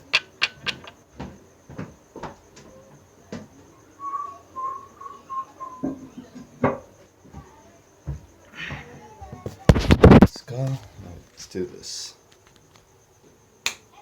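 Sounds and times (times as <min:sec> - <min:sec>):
sharp clicks and knocks: 0:00.0 - 0:01.3
person whistling: 0:03.9 - 0:06.0.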